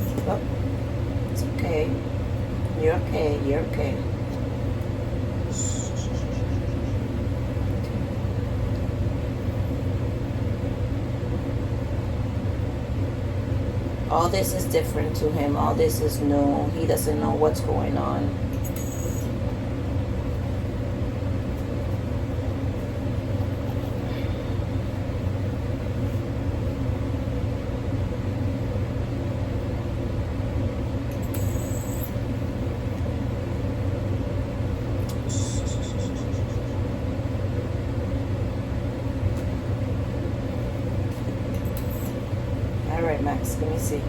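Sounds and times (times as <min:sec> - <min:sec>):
low mechanical hum: 0:00.0 - 0:44.0.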